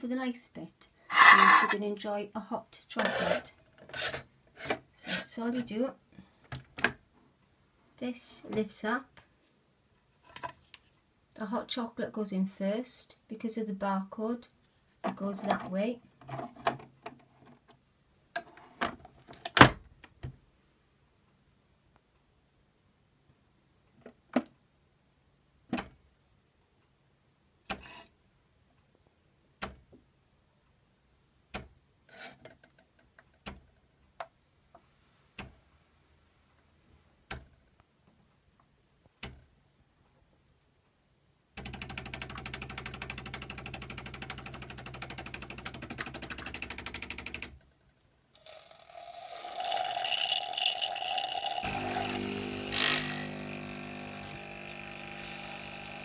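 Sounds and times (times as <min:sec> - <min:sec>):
pump buzzing: 0:49.0 - 0:56.0
hissing whir of hot water: 0:51.7 - 0:56.0.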